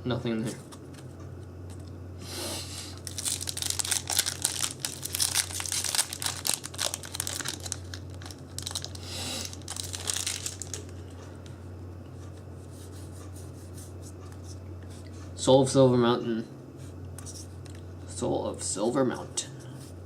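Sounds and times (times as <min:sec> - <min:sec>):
steady low hum: 0:00.0 - 0:20.0
foil wrapper crinkling and tearing: 0:03.0 - 0:11.0.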